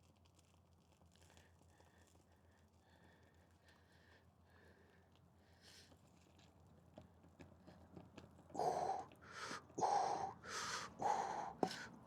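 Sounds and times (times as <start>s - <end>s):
man breathing hard: 8.6s - 12.0s.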